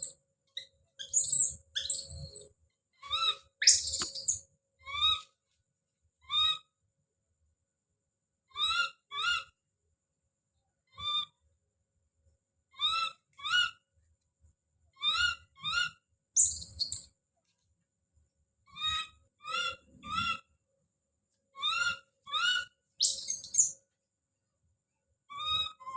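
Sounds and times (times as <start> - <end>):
monkey shrill scream: 1.0 - 2.4, 3.1 - 4.4, 15.1 - 17.0, 21.6 - 23.7
baby monkey crying: 3.0 - 5.2, 8.6 - 9.5, 12.8 - 13.8, 15.0 - 16.9, 18.7 - 20.5, 21.6 - 23.7.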